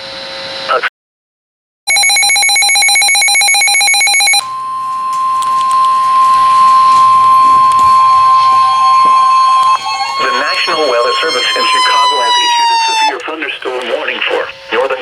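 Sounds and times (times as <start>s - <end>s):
radio hiss: 0.7s - 0.9s, 8.9s - 15.0s
pulsing electronic buzz: 4.4s - 13.1s.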